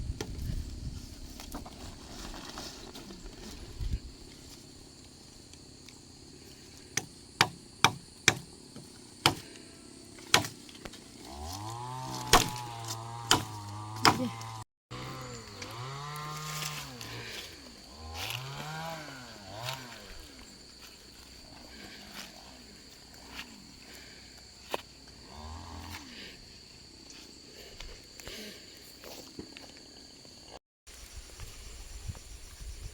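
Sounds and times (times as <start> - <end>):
sharp knocks: 7.0 - 8.5.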